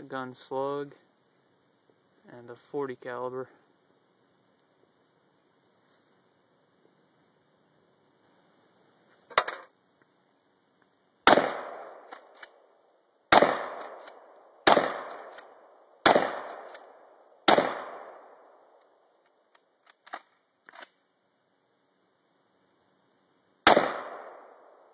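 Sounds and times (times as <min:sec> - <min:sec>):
echoing gunshots: 0:11.2 - 0:12.4, 0:13.3 - 0:18.5, 0:23.6 - 0:24.9.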